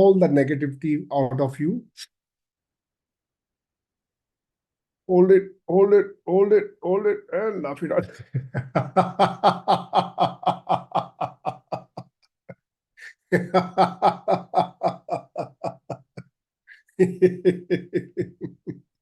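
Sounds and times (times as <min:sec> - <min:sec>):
person laughing rhythmically: 0:07.9 - 0:12.0, 0:13.0 - 0:18.8.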